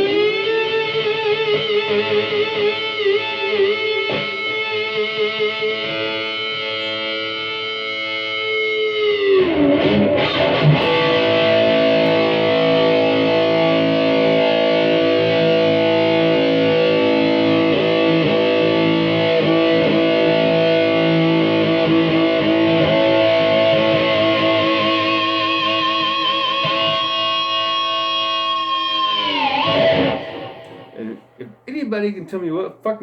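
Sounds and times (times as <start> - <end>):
distorted electric guitar: 0.0 - 31.7.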